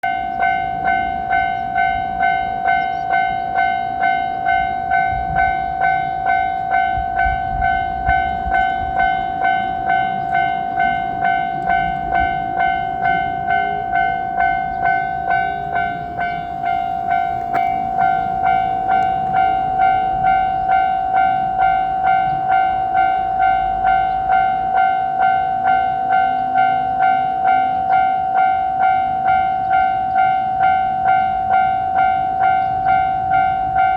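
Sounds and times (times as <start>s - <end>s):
level-crossing warning bell: 0.0s - 33.9s.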